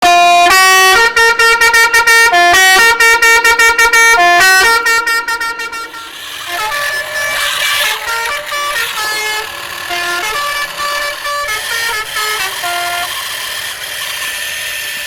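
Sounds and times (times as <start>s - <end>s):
bright horn-like tune: 0.0s - 14.7s.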